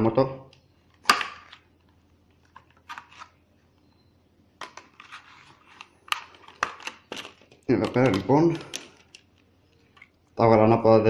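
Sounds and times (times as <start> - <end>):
plastic packaging crinkling: 4.6 - 10.2
plastic packaging clicks: 5.7 - 10.1.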